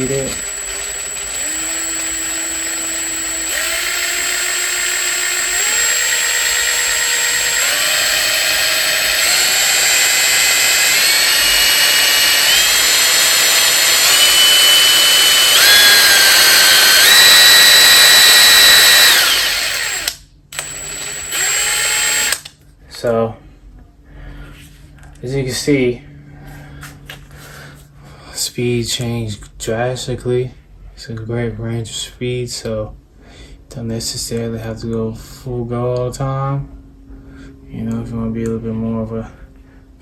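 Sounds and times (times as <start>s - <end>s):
impact wrench motor whine: 0.0s - 22.5s.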